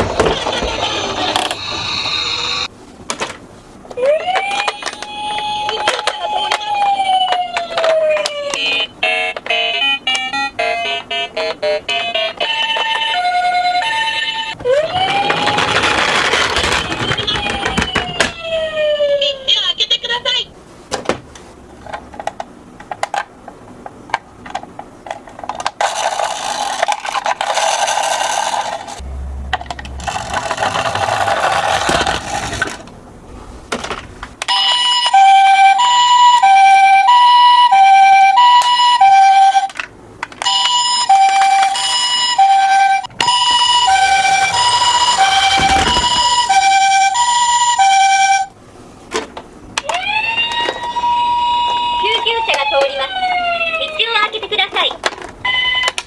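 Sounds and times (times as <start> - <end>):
toy siren two-tone wail: 4.0 - 15.8, 16.4 - 19.4, 34.5 - 39.7, 40.4 - 48.5, 49.8 - 54.1, 55.5 - 56.0
noisy rattle: 14.7 - 18.1, 25.6 - 33.0, 43.2 - 47.1.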